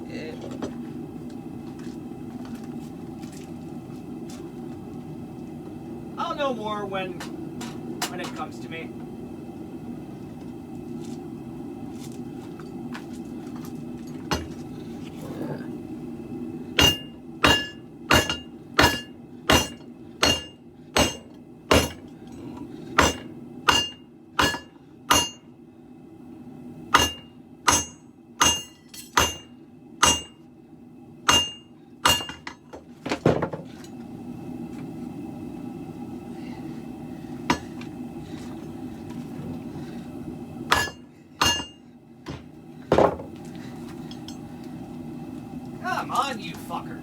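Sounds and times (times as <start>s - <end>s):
hammer striking metal on anvil: 16.8s - 22.0s, 23.0s - 25.4s, 27.0s - 30.4s, 31.3s - 32.6s, 40.7s - 41.8s.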